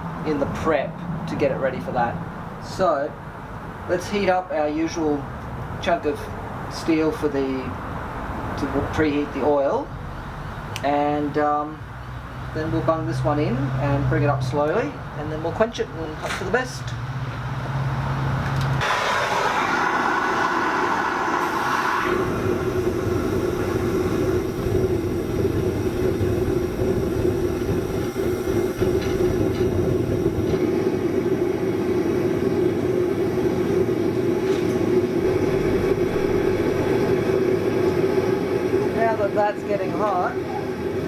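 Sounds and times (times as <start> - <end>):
bright hiss: 18.8 - 30.6.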